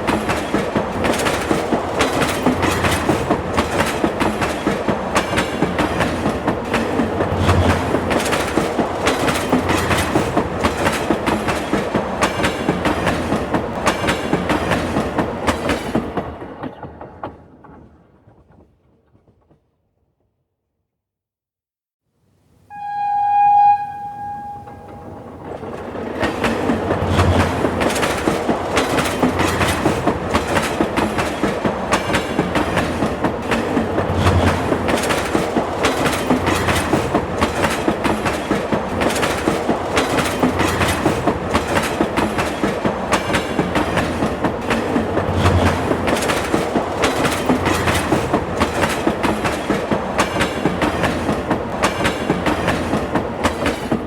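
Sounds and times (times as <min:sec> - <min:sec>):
train wheels clickety-clack: 0:00.0 - 0:19.8, 0:24.8 - 0:54.0
train horn blast: 0:22.7 - 0:25.4.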